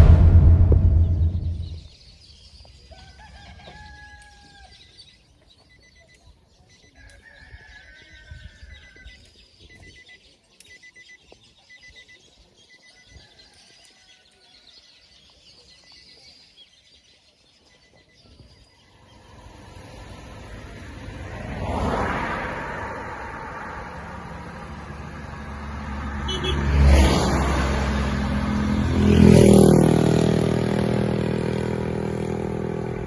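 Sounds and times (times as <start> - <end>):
low rumble: 0.0 - 1.8.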